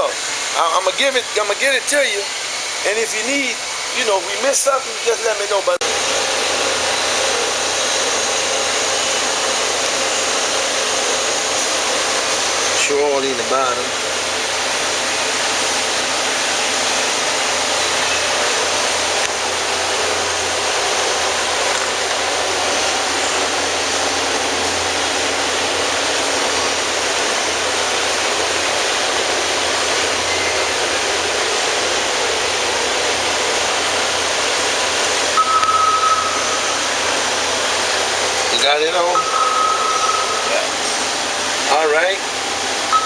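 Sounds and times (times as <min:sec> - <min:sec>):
short high beep: 0:35.4 - 0:36.9, 0:39.1 - 0:40.7.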